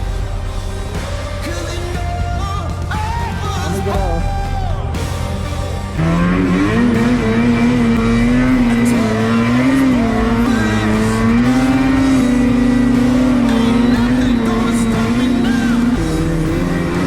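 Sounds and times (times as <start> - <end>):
snowmobile engine at high revs: 5.9 - 17.0.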